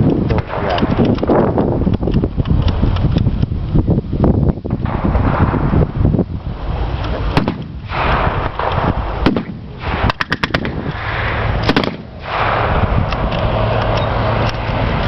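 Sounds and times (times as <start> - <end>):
loud rumbling background: 0.0 - 15.0
gunshots: 7.2 - 13.2.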